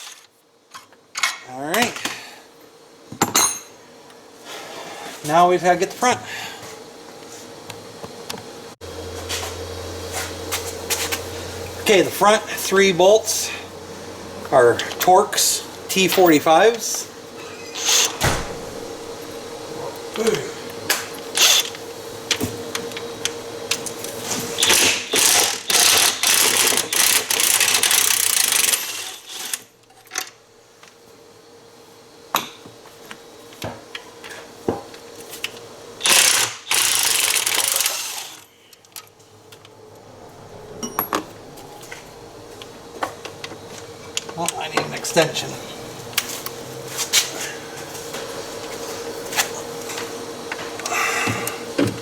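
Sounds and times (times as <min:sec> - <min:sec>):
ratchet clicking: 0:24.6 - 0:29.7, 0:36.0 - 0:38.4.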